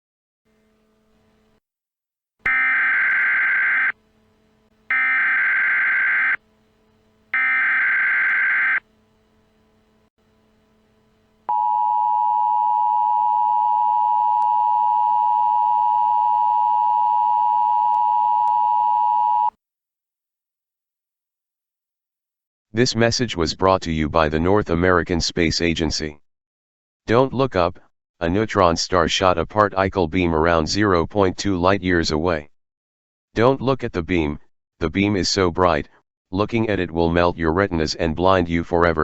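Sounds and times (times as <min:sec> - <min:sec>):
dual-tone alert signal: 0:02.5 - 0:04.0, 0:04.9 - 0:06.4
harsh buzzing data bursts: 0:02.5 - 0:11.6.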